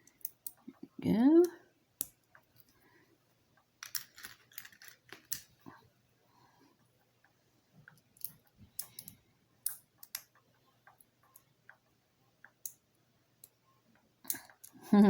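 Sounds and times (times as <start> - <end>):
plastic toy bricks clicking: 3.8 - 5.5.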